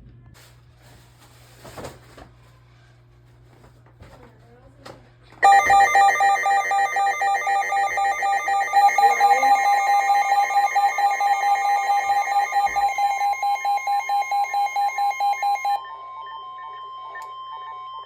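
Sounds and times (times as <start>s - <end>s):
loud warbling alert beep: 5.4s - 15.8s
steady warning alarm tone: 5.4s - 15.8s.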